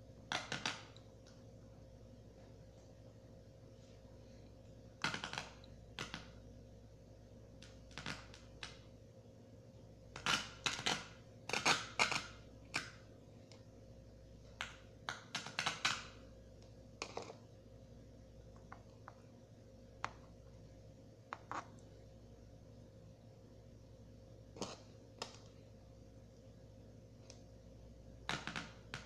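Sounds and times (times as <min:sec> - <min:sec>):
faint electrical hum: 0:00.0 - 0:29.0
clicks and taps of hard objects: 0:14.5 - 0:16.1, 0:17.0 - 0:17.4, 0:21.3 - 0:21.8.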